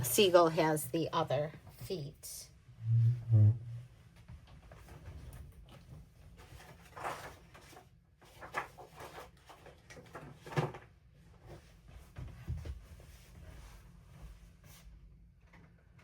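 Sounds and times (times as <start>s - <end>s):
low thuds: 2.8s - 3.8s
knocks and rustles of craft supplies: 4.2s - 16.0s.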